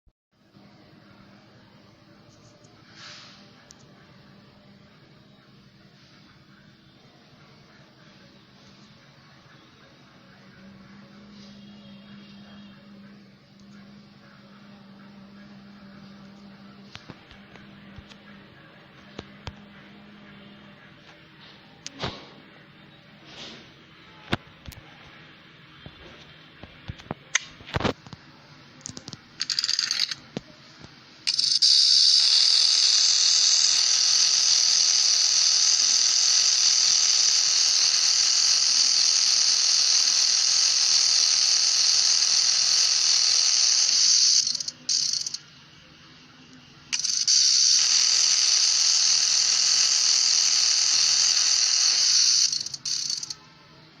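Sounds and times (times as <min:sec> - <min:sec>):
toy gun motor whirring: 0:29.4 - 0:30.2, 0:31.3 - 0:45.4, 0:46.9 - 0:53.4.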